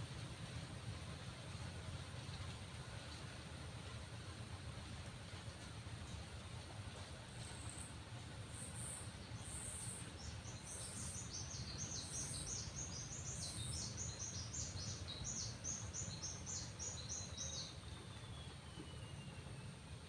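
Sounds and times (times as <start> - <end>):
small bird singing: 8.5 - 19.8.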